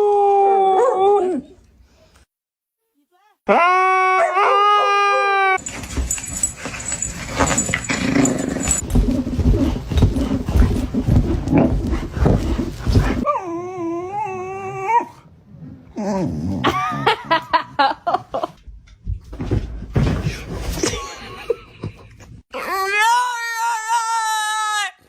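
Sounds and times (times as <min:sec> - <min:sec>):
dog growly grumbling: 0:15.5 - 0:17.3.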